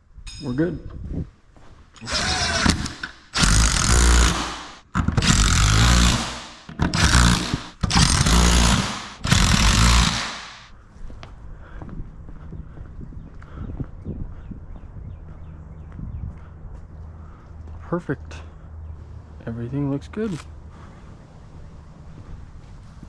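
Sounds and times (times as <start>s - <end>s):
power tool bursts: 2.0s - 10.7s.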